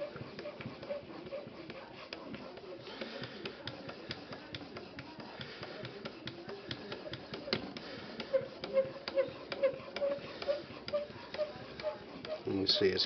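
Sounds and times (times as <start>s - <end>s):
squeak of sharpening strokes: 8.3s - 13.0s.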